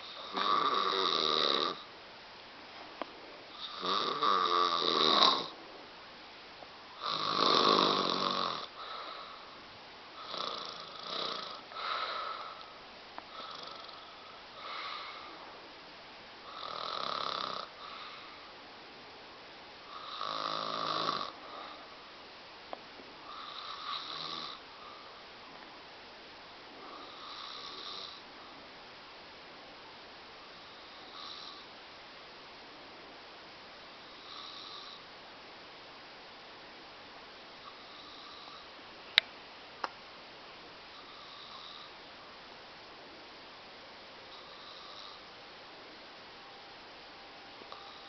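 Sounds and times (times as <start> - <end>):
woman snoring: 0.0 - 1.9, 3.5 - 5.6, 7.0 - 9.5, 10.2 - 12.6, 13.3 - 15.3, 16.5 - 18.1, 19.9 - 21.8, 23.3 - 25.1, 26.8 - 28.2, 30.8 - 31.7, 34.1 - 35.0, 37.7 - 38.7, 41.0 - 41.9, 44.3 - 45.3, 47.7 - 48.0.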